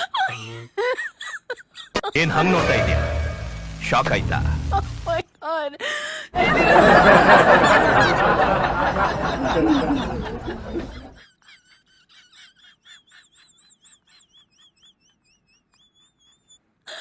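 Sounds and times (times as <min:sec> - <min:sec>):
loud noise burst: 0:02.2 - 0:05.2.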